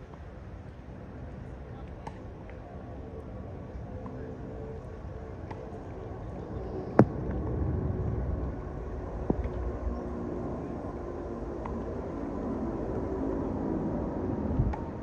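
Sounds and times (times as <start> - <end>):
distant jet airliner rumble: 1.1 - 15.0.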